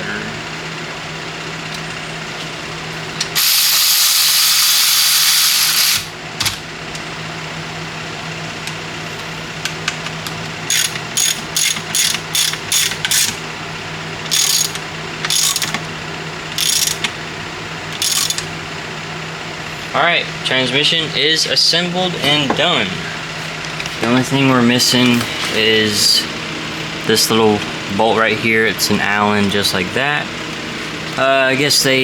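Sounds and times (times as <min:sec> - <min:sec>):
air ratchet running in bursts: 0:03.3 - 0:06.6, 0:10.6 - 0:13.4, 0:14.2 - 0:15.9, 0:16.5 - 0:17.2, 0:17.9 - 0:18.5.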